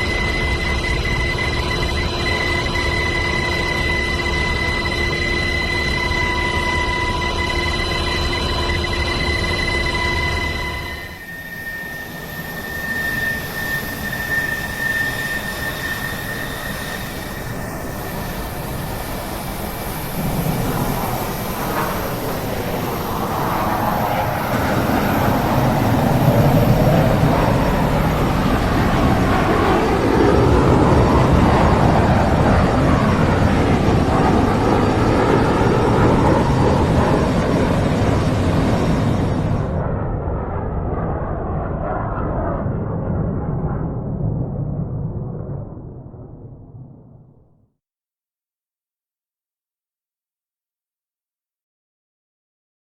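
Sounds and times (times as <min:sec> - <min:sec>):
faint high steady tone: 0:00.0 - 0:39.8
aircraft engine drone: 0:00.0 - 0:46.9.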